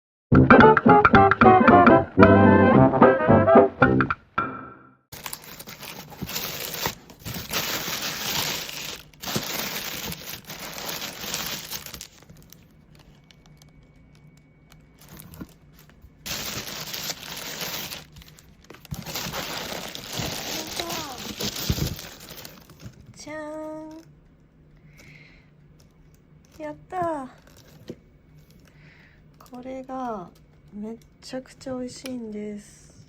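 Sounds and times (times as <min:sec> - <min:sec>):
packaging crinkling and rustling: 0:05.1 - 0:23.1.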